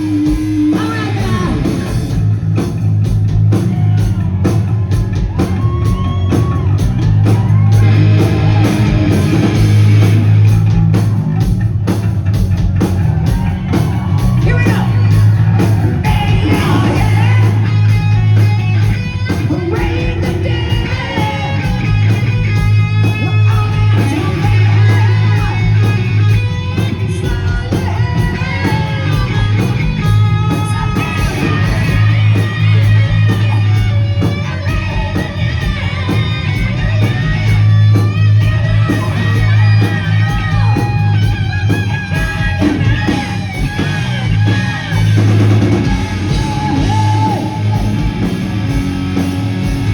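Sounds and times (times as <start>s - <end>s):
person shouting and singing: 0.0s - 2.2s, 13.2s - 48.4s
distorted electric guitar: 0.0s - 49.9s
heavy bass: 0.0s - 49.9s
pounding drums: 0.0s - 49.9s.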